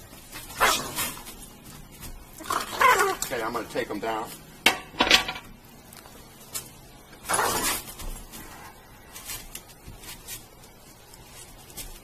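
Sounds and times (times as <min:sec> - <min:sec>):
puppy scrabbling and rustling: 0:00.0 - 0:03.5, 0:06.0 - 0:12.0.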